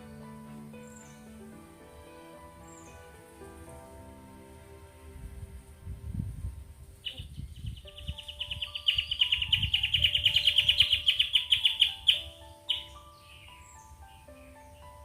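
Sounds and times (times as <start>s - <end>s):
soft background music: 0.0s - 15.0s
wind rumble: 0.7s - 15.0s
bird trilling: 7.0s - 15.0s.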